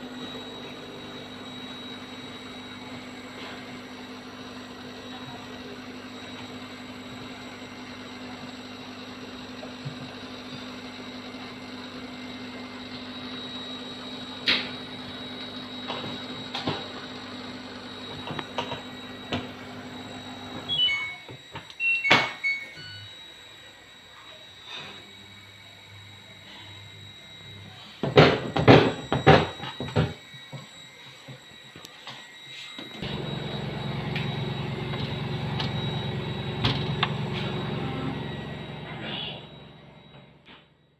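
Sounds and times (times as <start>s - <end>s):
electronic beeps: 20.7s - 23.2s
steady machine hum: 25.9s - 40.9s.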